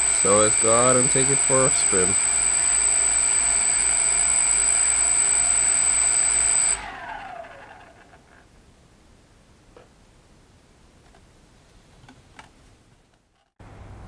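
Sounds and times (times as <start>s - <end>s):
drone motors whining: 0.0s - 8.3s.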